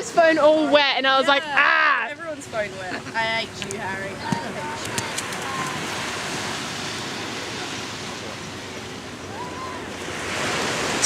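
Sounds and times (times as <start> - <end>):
waves washing on beach: 2.4 - 11.0.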